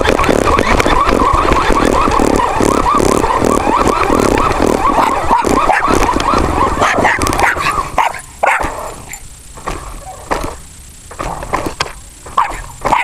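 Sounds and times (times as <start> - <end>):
toy rover motor and tyres: 0.0 - 13.0
small dog barking: 4.8 - 9.2, 12.3 - 13.0.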